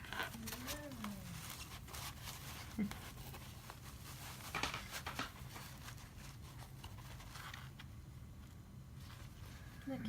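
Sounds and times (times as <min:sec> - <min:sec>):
packing material rustling: 0:00.0 - 0:07.9
room hum: 0:00.0 - 0:10.0.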